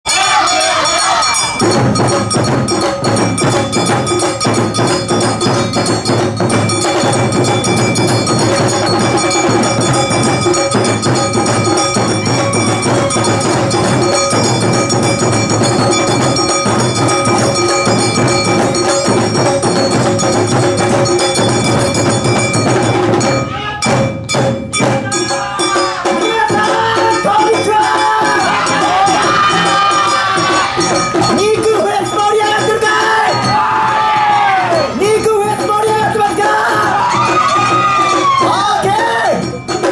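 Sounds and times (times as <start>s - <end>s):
drum and percussion rhythm: 0.0s - 39.9s
wavering melody line: 0.1s - 23.9s
steady held tones: 0.1s - 39.9s.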